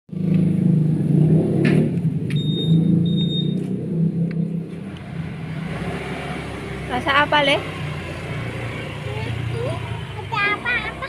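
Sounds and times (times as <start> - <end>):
vehicle engine running: 0.1 - 11.0
thin high beep: 2.4 - 3.6.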